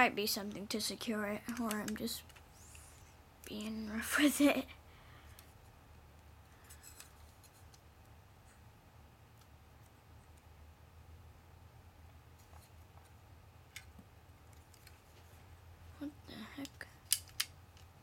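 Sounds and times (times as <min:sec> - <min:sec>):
low steady hum: 0:00.0 - 0:18.0
plastic bricks clicking together: 0:16.6 - 0:18.0.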